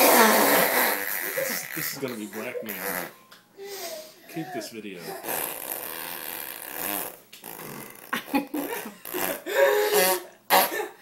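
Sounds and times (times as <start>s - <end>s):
child laughing: 0.0s - 3.1s
child making fake fart noise: 0.0s - 3.2s, 5.1s - 10.8s.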